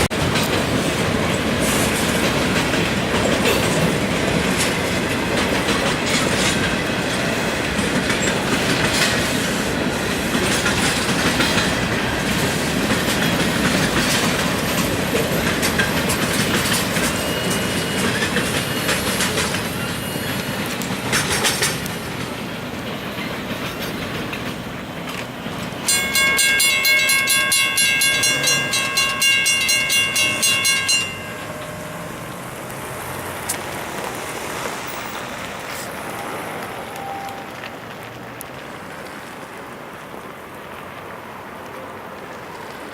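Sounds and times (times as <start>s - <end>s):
train wheels clicking over rail joints: 0.0s - 42.9s
level-crossing warning bell: 10.3s - 22.2s, 25.8s - 33.3s, 36.1s - 37.7s.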